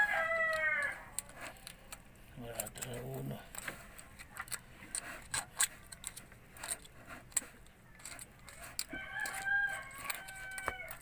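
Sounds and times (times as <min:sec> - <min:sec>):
rooster crowing: 0:00.0 - 0:01.2, 0:08.9 - 0:11.0.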